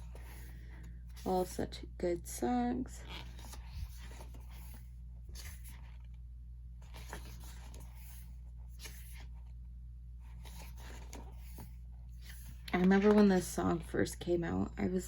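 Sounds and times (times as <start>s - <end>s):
paper rustling: 3.1s - 6.2s, 6.8s - 9.6s, 10.3s - 13.7s
paper swishes: 3.2s - 6.1s, 6.8s - 9.5s.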